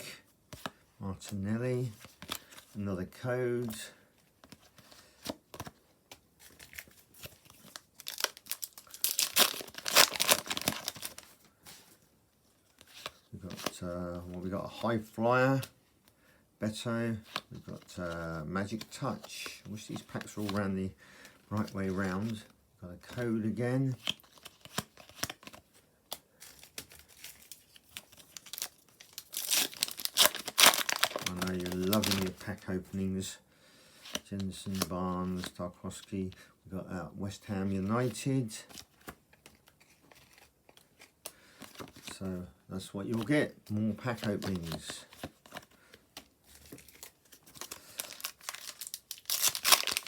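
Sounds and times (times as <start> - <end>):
foil pack tearing and crinkling: 6.6 - 11.3, 26.5 - 32.3, 46.6 - 50.0
trading cards shuffled: 23.9 - 32.4, 37.9 - 42.3, 43.1 - 50.0.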